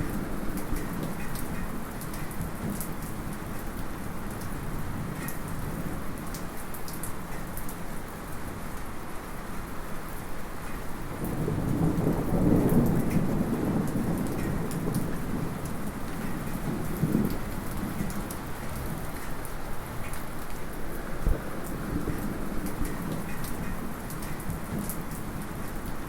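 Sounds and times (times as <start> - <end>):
light rain pattering: 0.0 - 26.0
distant thunder rumbling: 11.2 - 19.1.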